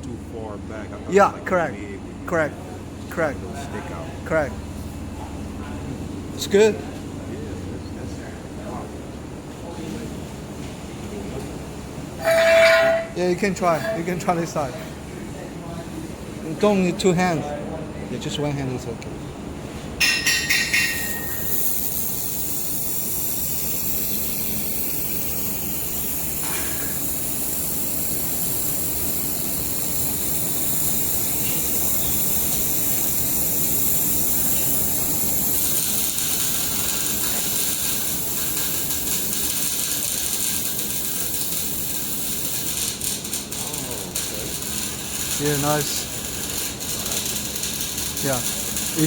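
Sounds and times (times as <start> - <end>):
laser welder hissing: 20.6 - 49.0.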